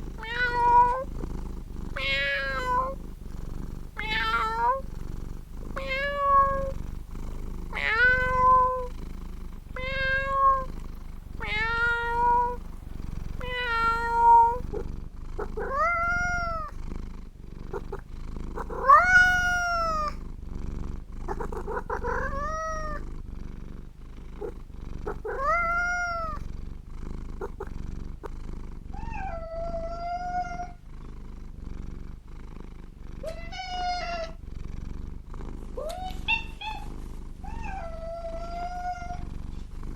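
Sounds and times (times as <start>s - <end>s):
cat purring: 0.0s - 39.9s
cat meowing: 0.2s - 1.1s, 2.0s - 3.0s, 4.0s - 4.8s, 5.8s - 6.7s, 7.8s - 8.9s, 9.8s - 10.7s, 11.4s - 12.6s, 13.4s - 14.6s, 15.4s - 16.8s, 18.6s - 20.2s, 21.3s - 23.0s, 25.1s - 26.4s, 29.0s - 30.8s, 33.2s - 34.4s, 35.8s - 39.3s.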